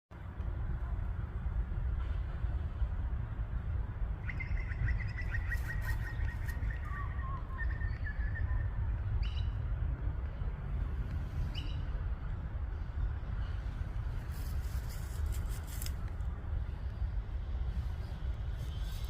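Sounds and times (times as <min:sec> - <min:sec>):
bird chirping: 0:04.2 - 0:09.6.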